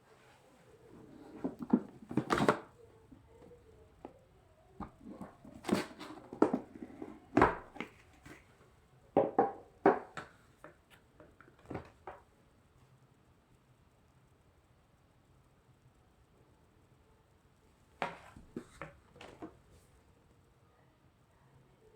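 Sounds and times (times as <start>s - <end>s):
cardboard game box handled: 4.9s - 8.4s.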